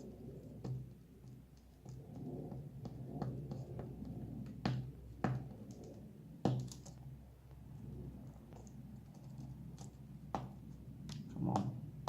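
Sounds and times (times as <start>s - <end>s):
fingers tapping on plastic: 4.5s - 7.0s.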